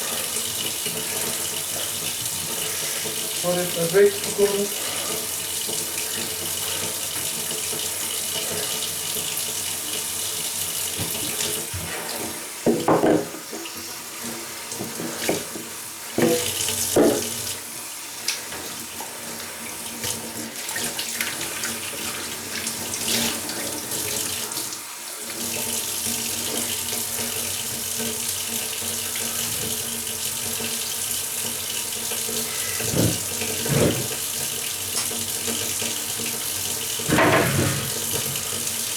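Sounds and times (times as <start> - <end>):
water running from a tap: 0.0 - 38.9
short knocks and clatters: 37.1 - 38.4.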